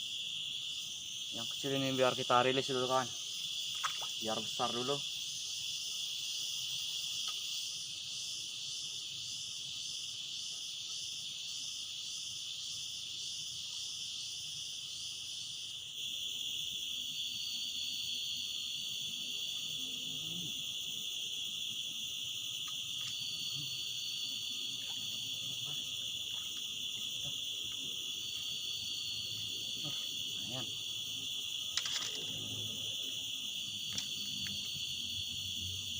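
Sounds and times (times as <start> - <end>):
insects shrilling: 0.0 - 35.9.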